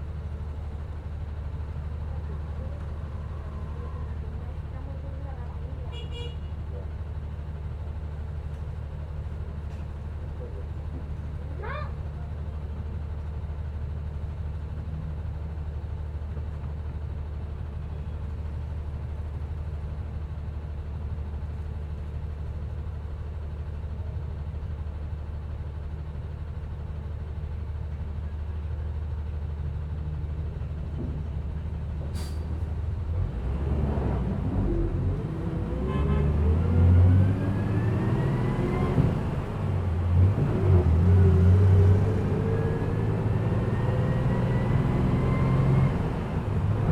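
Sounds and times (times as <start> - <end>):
bus engine droning: 0.0 - 46.9
engine whining accelerating: 33.4 - 46.9.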